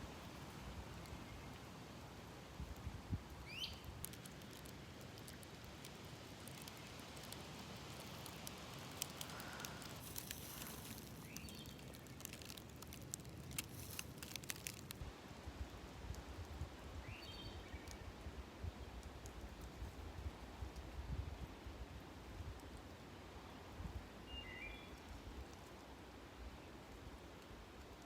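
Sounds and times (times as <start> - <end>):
steady outdoor hiss: 0.0 - 28.0
bird chirping: 3.4 - 3.9
footsteps crackling on dry leaves: 3.8 - 15.0.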